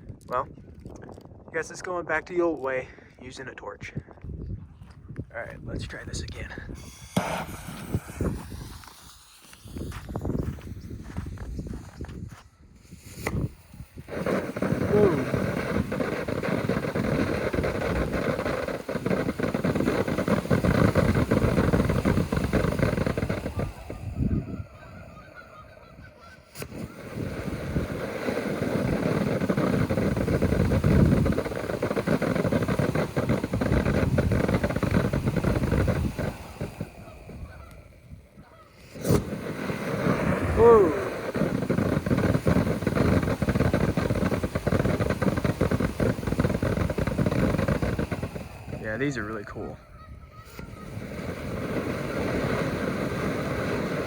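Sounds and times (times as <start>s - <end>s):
firework fountain crackling: 5.8s - 54.0s
sharp pop: 6.8s - 10.8s, 13.0s - 13.5s, 26.5s - 27.2s, 38.8s - 48.3s.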